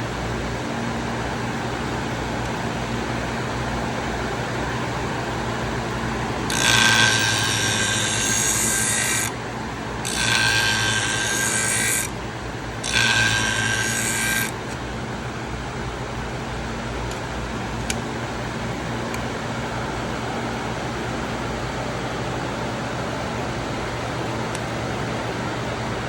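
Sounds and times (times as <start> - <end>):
sharpener motor humming: 4.9 - 14.8
blade grinding on abrasive wheel: 6.3 - 12.2, 12.8 - 14.7.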